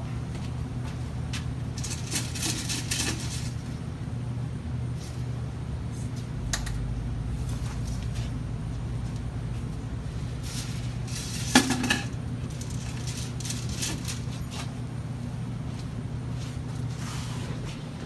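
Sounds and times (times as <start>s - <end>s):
low machine hum: 0.0s - 18.0s
small items clicking and rattling: 1.8s - 3.5s, 11.1s - 14.7s.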